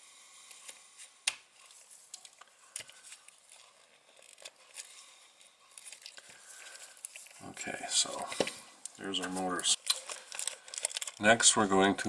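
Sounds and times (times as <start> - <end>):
plastic parts rustling: 0.5 - 12.0
plastic parts clicking: 9.2 - 11.4.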